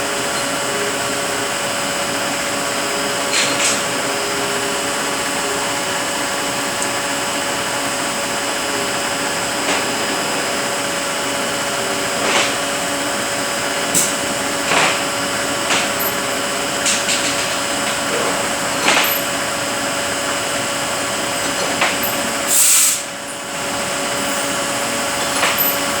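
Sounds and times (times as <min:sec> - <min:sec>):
air hisses: 0:22.4 - 0:23.2.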